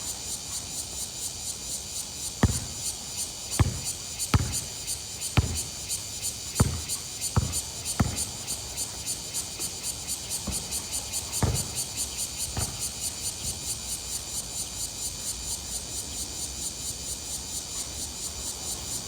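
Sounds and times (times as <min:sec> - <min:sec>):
basketball bouncing on court: 0:02.4 - 0:09.8, 0:10.4 - 0:13.6.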